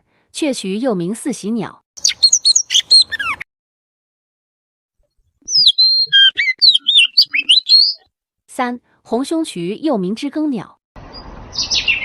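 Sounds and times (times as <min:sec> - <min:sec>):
bird singing whistled phrases: 0:02.0 - 0:03.4, 0:05.5 - 0:08.0.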